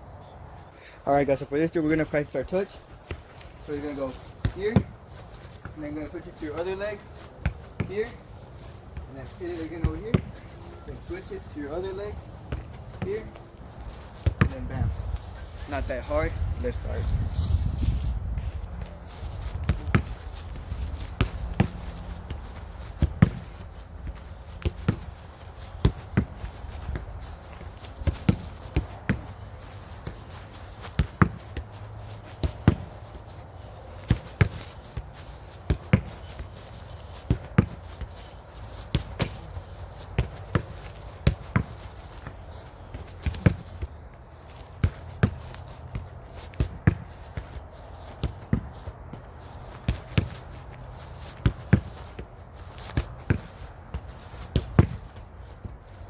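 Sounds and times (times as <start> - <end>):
footsteps on ground: 0.5 - 56.0
ball kicks thudding: 12.4 - 15.3, 16.2 - 33.1, 34.0 - 55.7.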